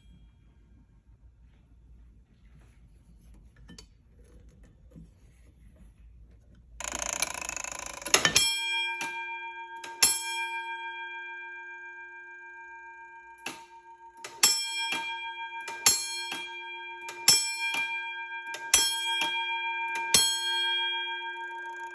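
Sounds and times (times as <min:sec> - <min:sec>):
fire alarm bell ringing: 0:00.0 - 0:00.8, 0:06.8 - 0:21.9
mechanical whirring rattle: 0:06.8 - 0:08.4.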